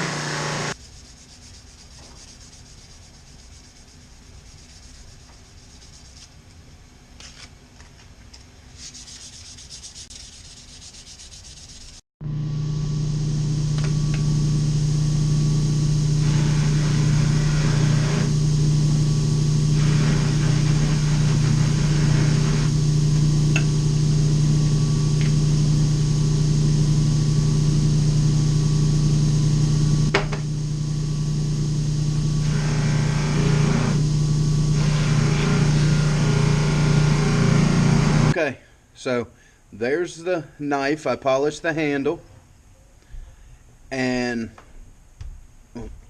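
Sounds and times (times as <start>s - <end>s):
sanding machine motor running: 0.0s - 0.8s, 12.2s - 38.4s.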